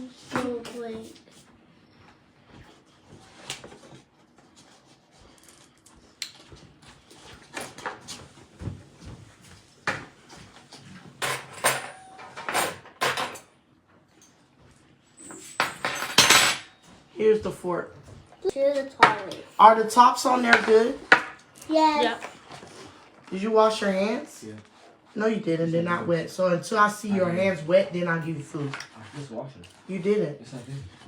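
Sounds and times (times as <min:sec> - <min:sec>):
dishes and cupboard doors clattering: 0:07.6 - 0:13.5, 0:15.3 - 0:16.8, 0:20.3 - 0:21.4.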